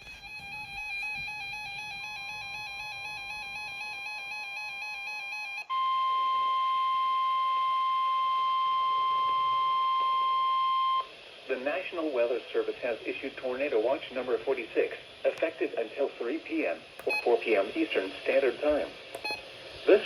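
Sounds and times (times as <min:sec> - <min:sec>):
loud steady alert beep: 0:17.1 - 0:17.4, 0:19.2 - 0:19.5.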